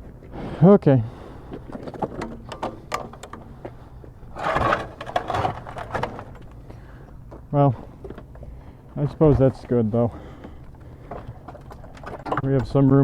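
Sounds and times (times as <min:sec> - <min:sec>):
rustling scrape: 0:04.3 - 0:06.5.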